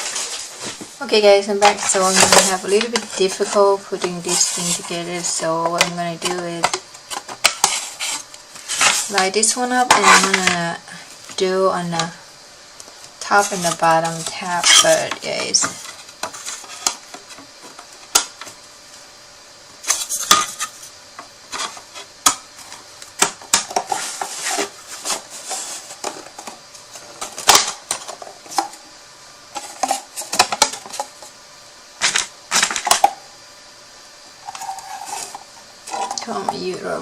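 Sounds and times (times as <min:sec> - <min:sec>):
cardboard box pieces rustling: 0:23.6 - 0:28.8.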